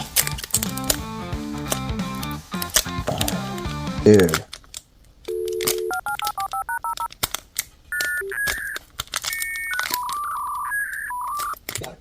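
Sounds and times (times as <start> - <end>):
sharp clicks: 4.5 - 11.8
electronic beeps and tones: 5.3 - 7.1, 7.9 - 11.6
telephone dial tone: 5.3 - 7.1, 7.9 - 11.6
touch-tone keypad beeps: 5.3 - 7.1, 7.9 - 11.6.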